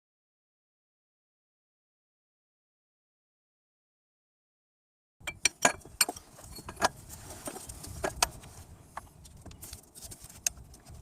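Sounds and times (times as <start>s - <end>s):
hand tools clicking on metal: 5.2s - 8.4s.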